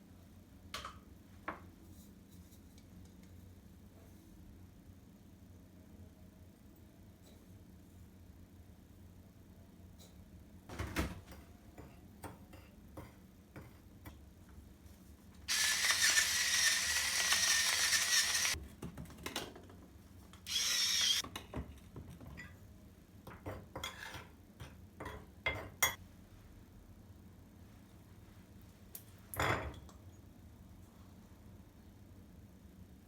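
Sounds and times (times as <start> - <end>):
utensils and dishes clicking: 15.5 - 18.6.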